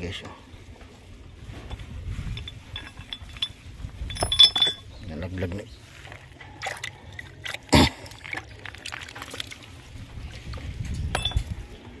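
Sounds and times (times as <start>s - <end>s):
small metal clinks: 1.7s - 5.0s, 10.8s - 11.8s
water trickling and splashing: 4.1s - 12.0s.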